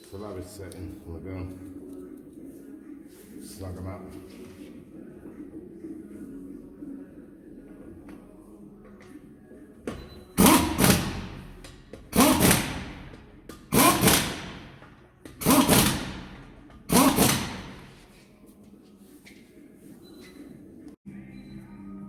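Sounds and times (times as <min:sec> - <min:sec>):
impact gun bursts: 0:10.4 - 0:18.0.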